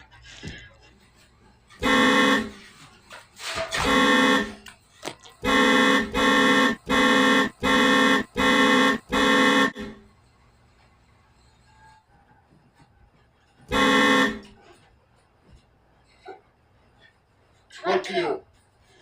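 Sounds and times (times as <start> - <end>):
air horn blasts: 1.7 - 2.8, 3.6 - 4.7, 5.4 - 10.1, 13.7 - 14.7.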